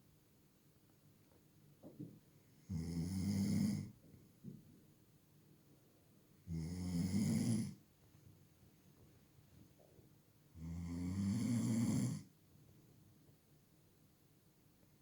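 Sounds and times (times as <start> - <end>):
rasping snores: 2.7 - 3.9, 6.5 - 7.8, 10.6 - 12.3.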